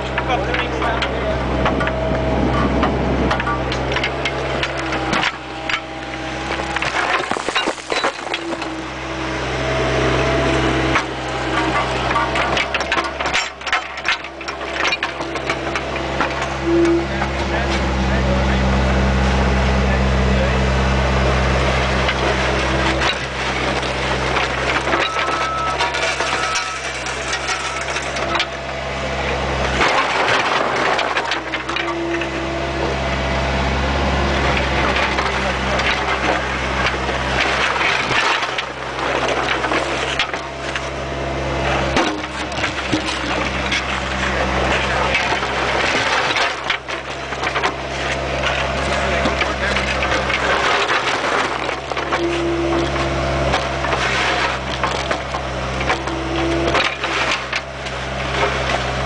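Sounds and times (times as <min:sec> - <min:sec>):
diesel engine under load: 0:00.0 - 0:59.0
bucket scraping soil: 0:34.5 - 0:59.0.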